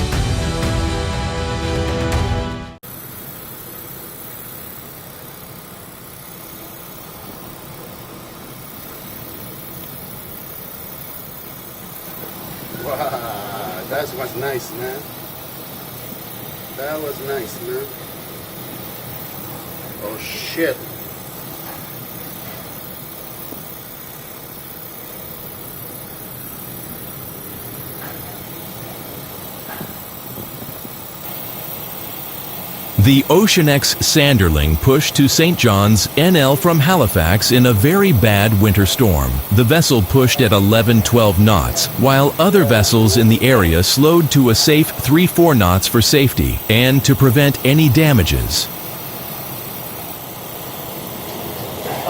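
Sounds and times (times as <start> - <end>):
ship engines droning: 33.0 - 48.8.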